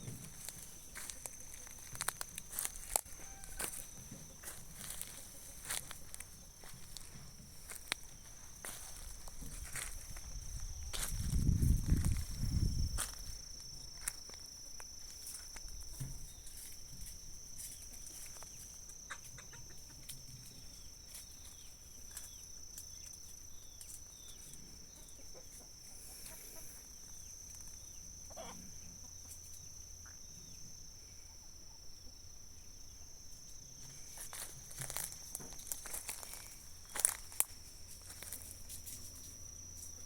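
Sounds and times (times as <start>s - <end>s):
steady high-pitched tone: 0.0s - 14.4s
chickens clucking: 19.1s - 20.2s, 24.4s - 26.8s, 28.2s - 29.5s.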